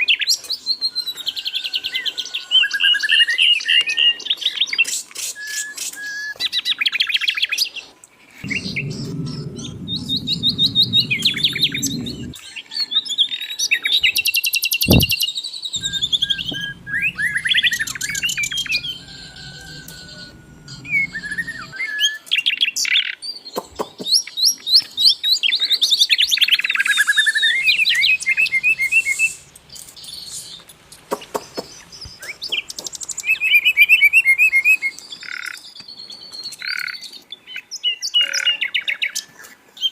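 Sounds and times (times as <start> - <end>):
steady low hum: 8.4 - 12.4, 14.9 - 15.1, 15.8 - 21.8, 27.4 - 33.1
thump: 14.9 - 15.1.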